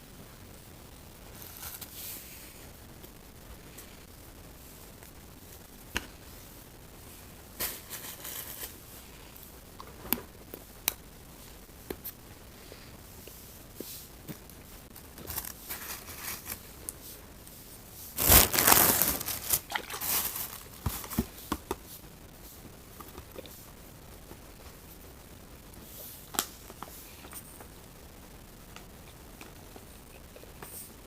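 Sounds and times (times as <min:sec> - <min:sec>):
wrapper crinkling and tearing: 0:18.2 - 0:21.3.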